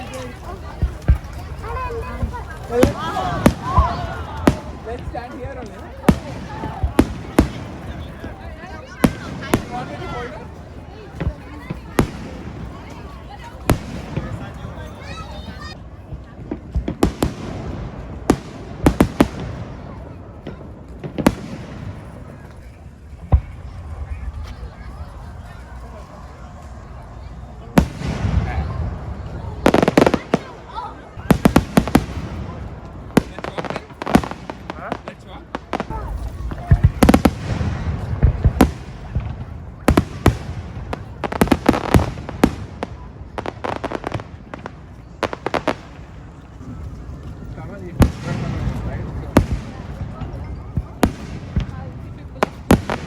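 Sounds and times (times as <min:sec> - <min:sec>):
fireworks bangs echoing: 0:00.0 - 0:53.0.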